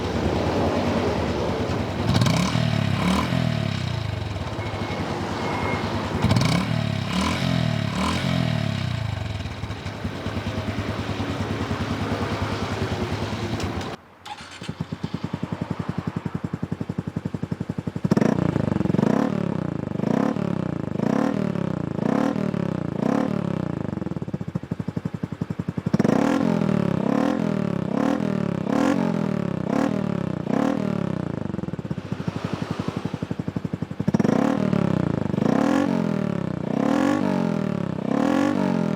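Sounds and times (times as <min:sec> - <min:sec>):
motorcycle throttle blips: 0:00.0 - 0:15.3
motorcycle engine revving: 0:00.0 - 0:38.9.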